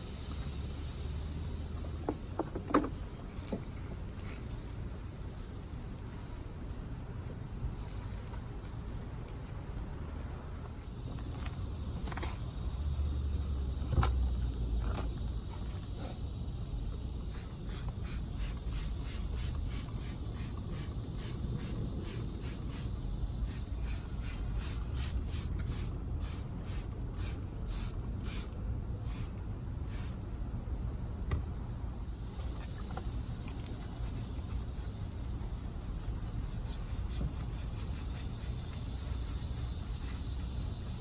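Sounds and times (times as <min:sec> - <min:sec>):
low steady rumble: 0:03.0 - 0:41.0
trigger spray bottle squirting: 0:17.3 - 0:30.2.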